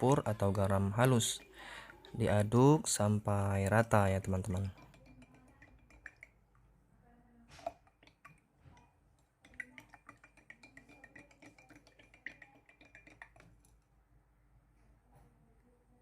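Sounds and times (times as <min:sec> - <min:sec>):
metal spoon clinking against glass: 0:00.0 - 0:03.0, 0:03.7 - 0:06.4, 0:09.4 - 0:13.7.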